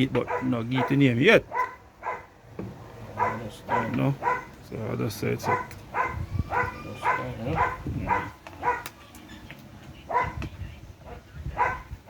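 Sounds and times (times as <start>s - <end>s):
dog barking: 0.2s - 2.3s, 3.2s - 4.5s, 5.4s - 9.0s, 10.1s - 10.4s, 11.5s - 12.0s.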